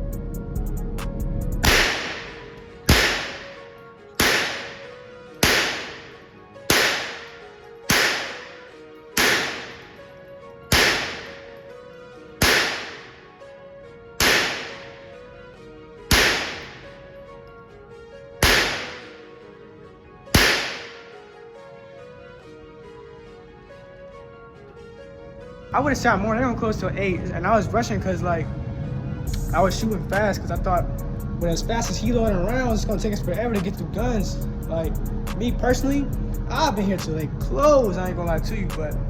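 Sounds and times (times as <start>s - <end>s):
gunshots with ringing decay: 1.6s - 10.1s, 10.7s - 11.7s, 12.4s - 13.2s, 14.2s - 15.2s, 16.1s - 17.0s, 18.4s - 19.2s, 20.3s - 21.2s.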